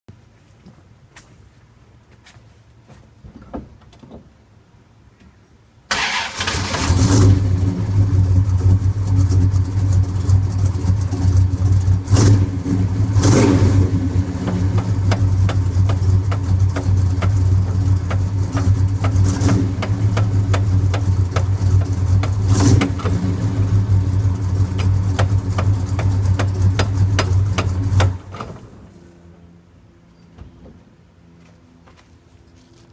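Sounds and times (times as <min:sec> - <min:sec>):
car engine starting and running: 0:05.9 - 0:29.4.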